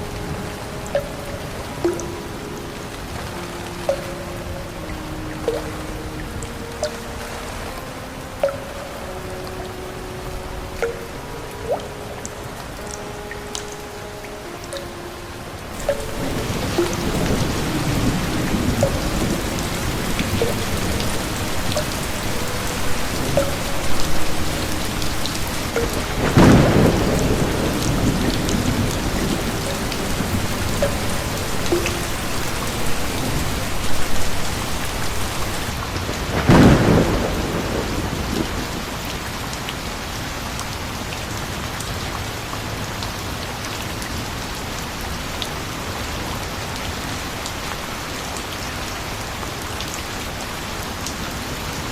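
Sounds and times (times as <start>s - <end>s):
steady rain: 0.0s - 51.9s
thunder cracks: 15.8s - 39.0s.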